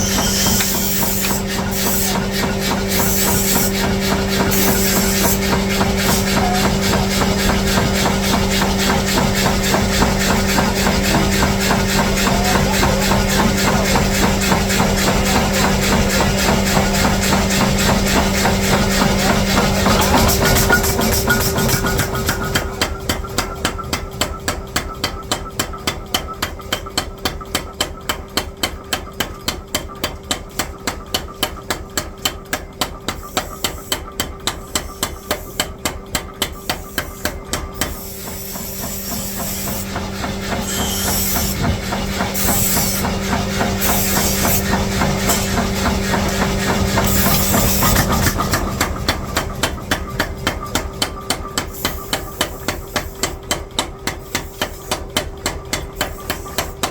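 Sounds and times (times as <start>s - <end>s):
machine hum: 0.0s - 25.6s, 37.1s - 54.1s
forging hammer striking steel: 0.0s - 27.4s, 31.1s - 56.9s.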